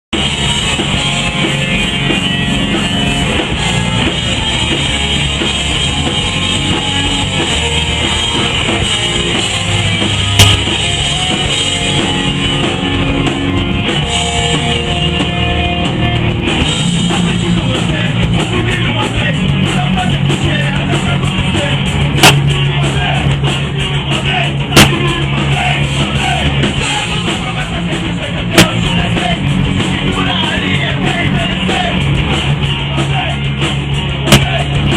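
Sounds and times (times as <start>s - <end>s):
rock band playing live: 0.1s - 34.9s
short sharp pops: 22.2s - 22.4s.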